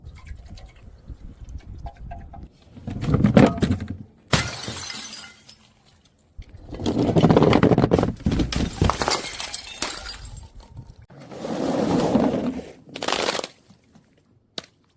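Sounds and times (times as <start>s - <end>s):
broken glass crunching: 4.3s - 6.0s, 8.4s - 10.9s
glass bottle shattering: 4.3s - 6.0s, 8.5s - 10.8s.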